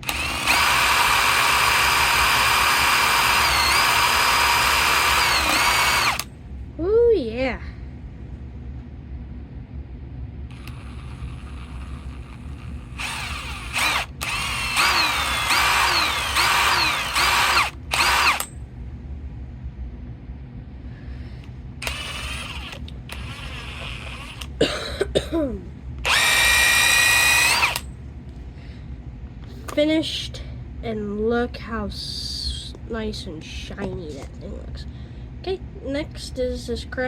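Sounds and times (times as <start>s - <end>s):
power drill running: 0.0s - 6.3s, 10.5s - 18.5s, 21.8s - 24.6s, 26.0s - 27.9s.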